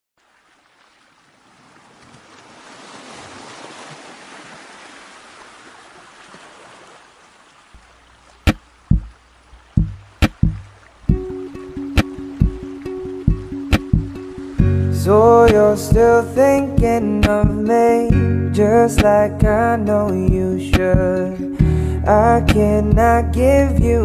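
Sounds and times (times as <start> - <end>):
sharp drum hits: 9.8 - 11.3, 13.3 - 14.7.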